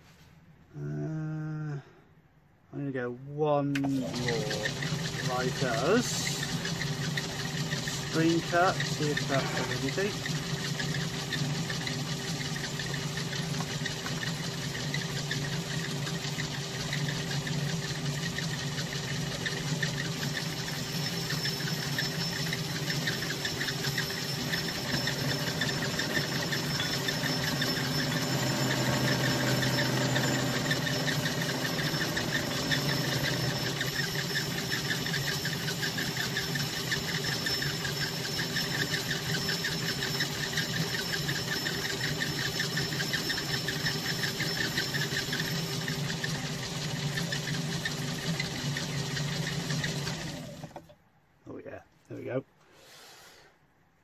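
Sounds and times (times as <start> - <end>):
metal lathe humming: 3.8 - 50.9
faint high whine: 20.7 - 45.5.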